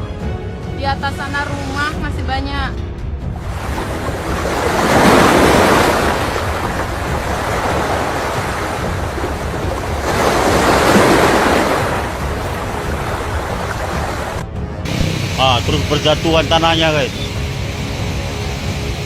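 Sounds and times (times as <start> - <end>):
wind buffeting microphone: 3.2 - 16.3
floodwater rushing: 3.2 - 19.0.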